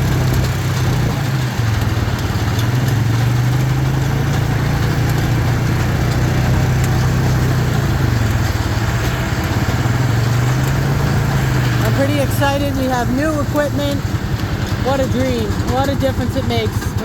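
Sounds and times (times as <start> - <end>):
baler rolling hay: 0.0 - 17.0
tractor engine running: 0.0 - 17.0.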